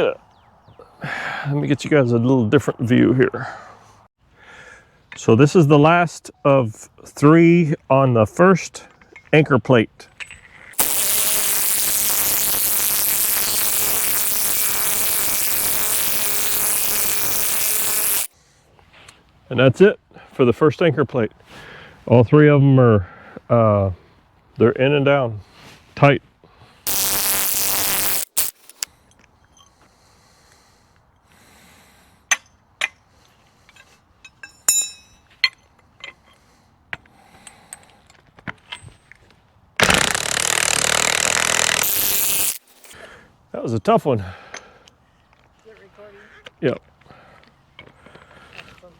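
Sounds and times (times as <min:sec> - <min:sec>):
impact wrench driving bolt: 0:10.8 - 0:18.3, 0:26.9 - 0:28.9
metal clinks of tools handled: 0:33.7 - 0:36.4
metal clang: 0:34.3 - 0:35.6.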